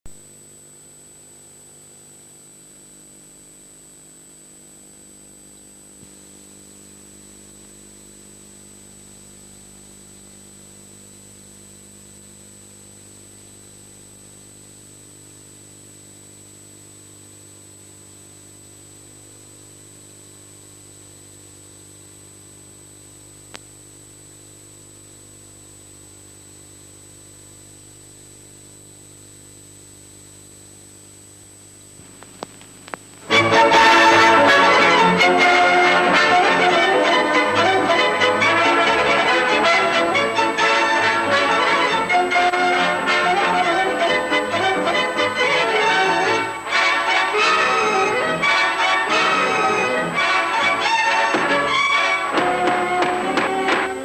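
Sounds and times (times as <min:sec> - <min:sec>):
tape playback hum and hiss: 0:00.1 - 0:54.0
high-pitched whine: 0:32.0 - 0:54.0.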